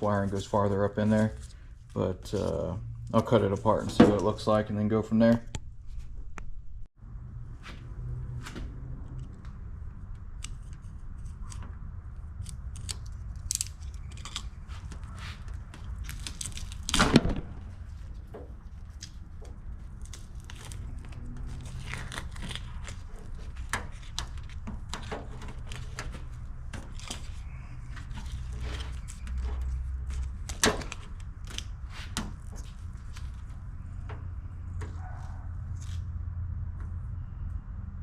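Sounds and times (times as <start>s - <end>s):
wires and tape pulled apart: 10.4s - 33.6s, 35.7s - 36.1s.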